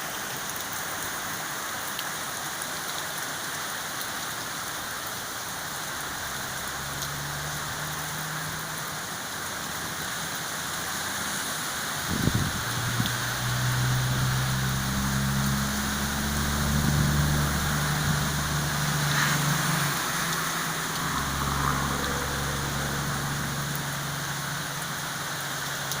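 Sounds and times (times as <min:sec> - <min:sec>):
heavy rain falling: 0:00.0 - 0:26.0
wind gust on microphone: 0:12.0 - 0:13.5.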